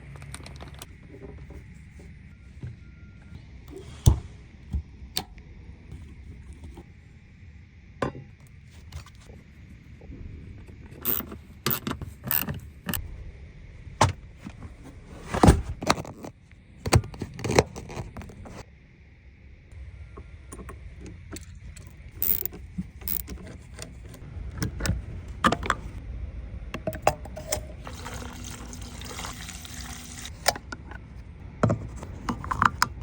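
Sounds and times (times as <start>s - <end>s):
low steady hum: 0.0s - 33.0s
hand tools clinking and scraping: 11.0s - 13.0s, 22.2s - 24.2s.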